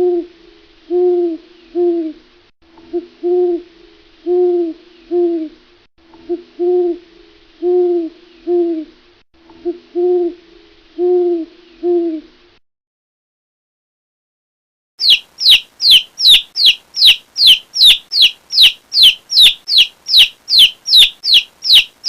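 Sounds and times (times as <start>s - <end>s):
owl hooting: 0.9s - 2.2s, 2.8s - 5.6s, 6.2s - 8.9s, 9.6s - 10.4s, 11.0s - 12.3s, 15.0s - 22.0s.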